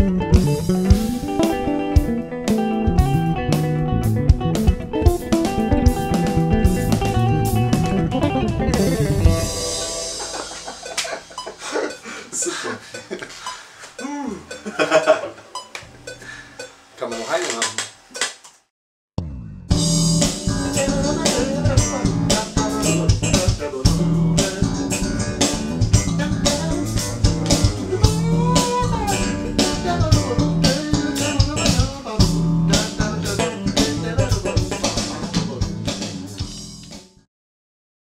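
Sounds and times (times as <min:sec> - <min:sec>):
funk jazz band playing: 0:00.0 - 0:12.2, 0:19.7 - 0:37.0.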